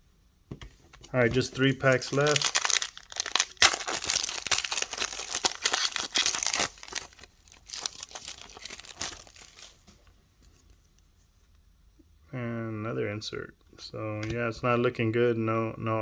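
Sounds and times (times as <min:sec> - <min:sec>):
wrapper being torn and crinkled: 0:01.0 - 0:09.8.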